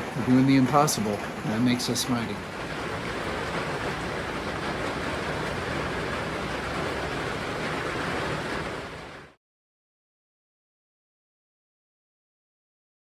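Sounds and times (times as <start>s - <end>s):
heavy rain falling: 0.0s - 9.4s.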